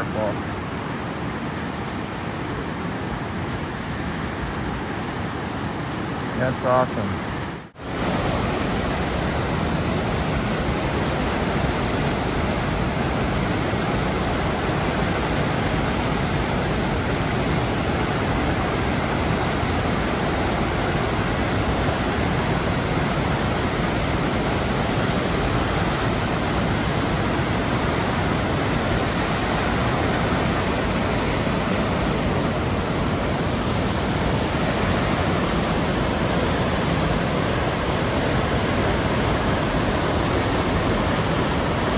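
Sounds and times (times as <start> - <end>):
rush of falling water: 7.8 - 41.9.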